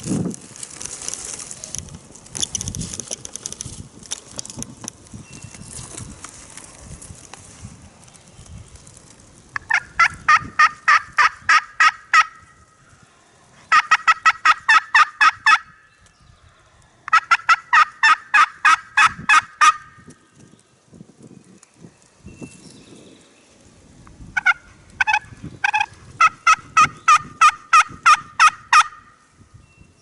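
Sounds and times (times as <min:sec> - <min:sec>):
turkey yelping: 0:09.6 - 0:12.4, 0:13.7 - 0:15.7, 0:17.1 - 0:20.0, 0:24.4 - 0:29.0.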